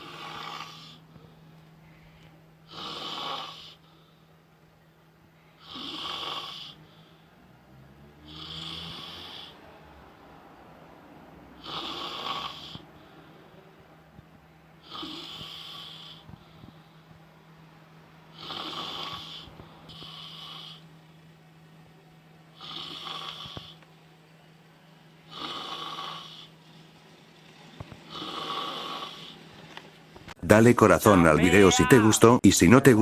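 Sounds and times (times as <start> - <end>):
woman snoring: 0.0 - 1.2, 2.6 - 3.9, 5.6 - 9.7, 11.5 - 13.2, 14.8 - 16.4, 18.3 - 21.0, 22.5 - 23.8, 25.2 - 26.6, 28.1 - 29.5.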